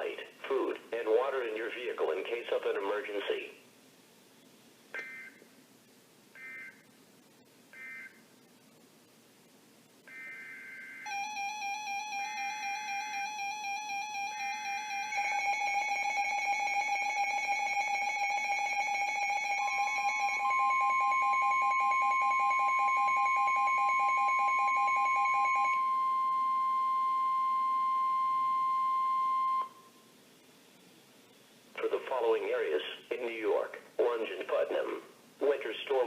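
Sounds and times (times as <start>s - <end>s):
data burst tones: 6.4s - 6.9s
steady warning tone: 10.1s - 30.0s.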